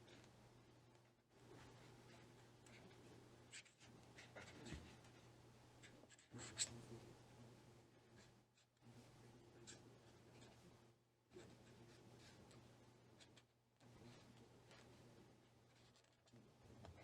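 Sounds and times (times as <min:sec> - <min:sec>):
faint low hum: 0:00.0 - 0:17.0
pen scratching on paper: 0:05.8 - 0:06.8, 0:11.3 - 0:12.6.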